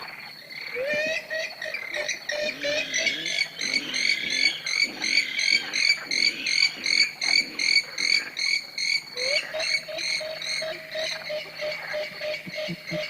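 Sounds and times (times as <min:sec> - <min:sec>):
animal croaking calls: 0:00.6 - 0:13.0.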